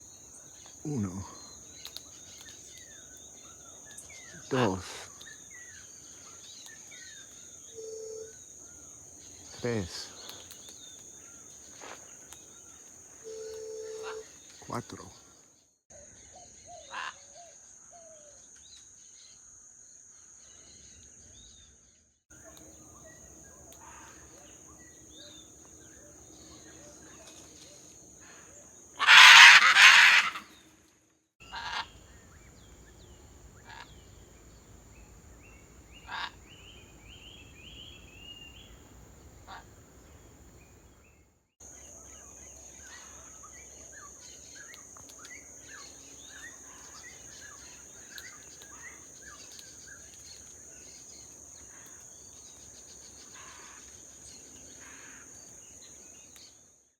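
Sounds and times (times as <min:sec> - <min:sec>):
insect drone: 0:00.0 - 0:56.9
macaw squawking: 0:29.0 - 0:30.6, 0:31.4 - 0:32.0.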